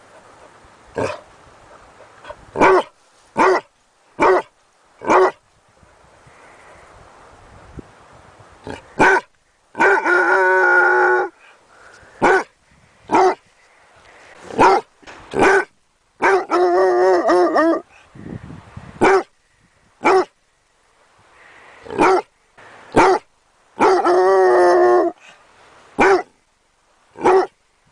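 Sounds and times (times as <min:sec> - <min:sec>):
dog barking: 0:02.6 - 0:05.4, 0:09.0 - 0:10.1, 0:12.2 - 0:12.5, 0:13.1 - 0:13.4, 0:14.5 - 0:16.6, 0:19.0 - 0:19.3, 0:20.0 - 0:20.3, 0:21.9 - 0:22.3, 0:23.0 - 0:24.1, 0:26.0 - 0:26.3, 0:27.2 - 0:27.5.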